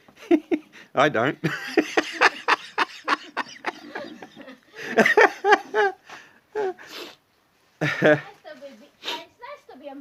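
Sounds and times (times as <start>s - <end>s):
people laughing: 1.4s - 6.8s, 7.8s - 8.2s.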